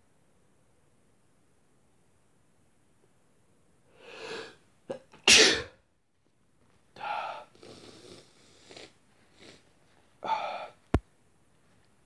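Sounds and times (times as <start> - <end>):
person sneezing: 4.0 - 5.8.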